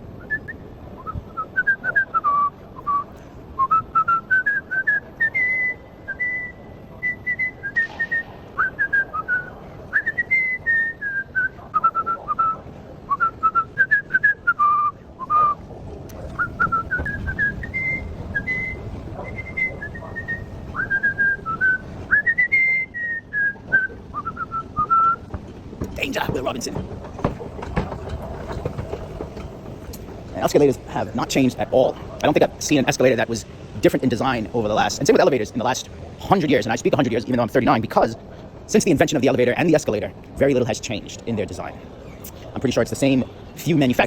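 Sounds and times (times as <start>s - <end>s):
man whistling a tune: 0.2s - 15.6s, 16.3s - 25.3s.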